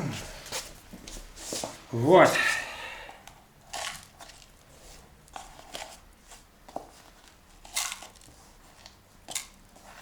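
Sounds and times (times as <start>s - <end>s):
soft rustles and scrapes: 0.4s - 1.9s, 3.7s - 10.0s.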